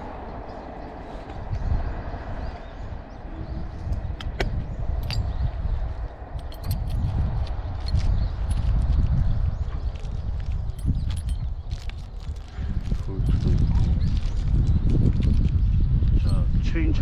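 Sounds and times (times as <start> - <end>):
wind rumble on microphone: 0.0 - 17.0
metal hand tools clinking: 5.0 - 5.3, 6.4 - 7.2, 10.8 - 11.9.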